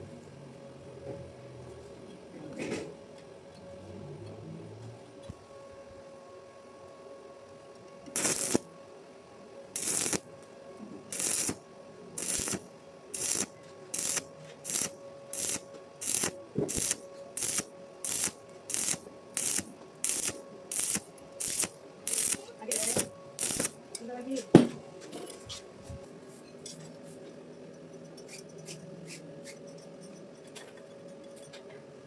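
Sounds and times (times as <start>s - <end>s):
welding arc crackling bursts: 8.2s - 8.7s, 9.8s - 10.3s, 11.1s - 11.6s, 12.2s - 23.8s.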